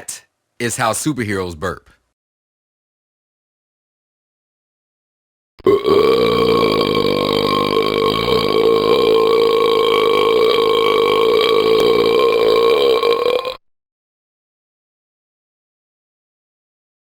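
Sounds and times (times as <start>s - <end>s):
long loud burp: 5.6s - 13.6s.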